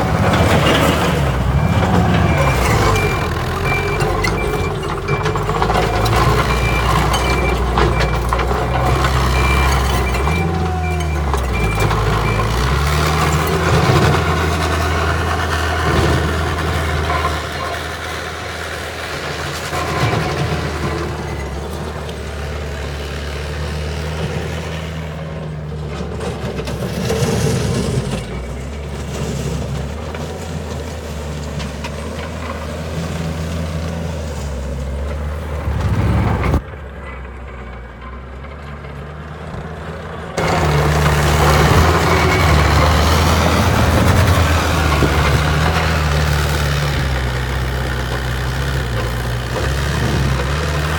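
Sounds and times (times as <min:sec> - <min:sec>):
diesel engine running: 0:00.0 - 0:50.9.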